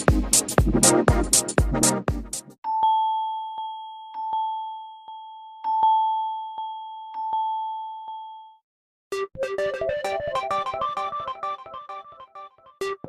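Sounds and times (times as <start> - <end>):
bell-like chime ringtone: 2.6 - 8.6.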